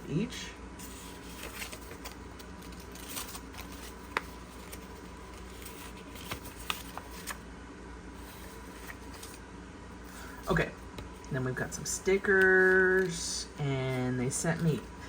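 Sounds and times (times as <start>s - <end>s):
paper and card rustling: 0.8s - 7.4s, 8.2s - 9.4s, 10.1s - 15.0s.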